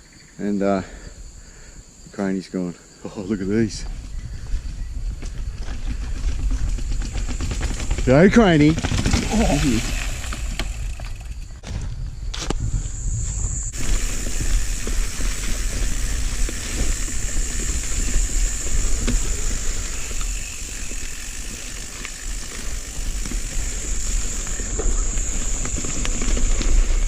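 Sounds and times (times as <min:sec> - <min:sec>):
wind rumble on microphone: 0:03.7 - 0:20.8
bike knocking and rattling: 0:05.0 - 0:12.6, 0:13.7 - 0:27.0.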